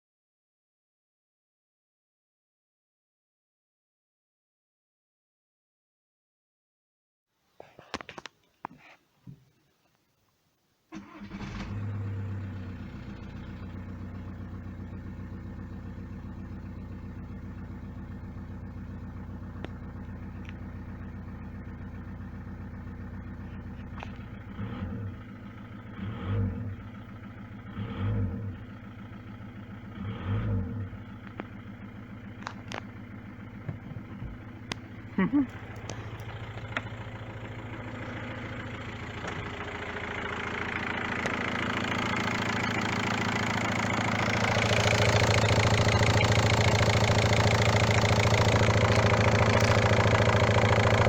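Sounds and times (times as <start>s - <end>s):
diesel car engine starting and idling: 10.9s - 51.0s
engine revving: 11.0s - 18.1s, 23.2s - 32.8s, 33.7s - 51.0s.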